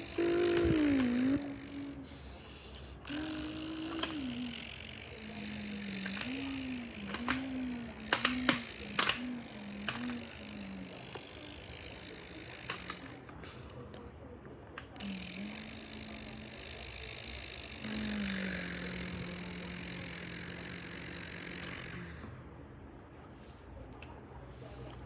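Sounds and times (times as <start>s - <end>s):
person imitating a car engine: 0.0s - 13.3s, 15.0s - 22.4s
sharp clicks: 3.1s - 13.2s.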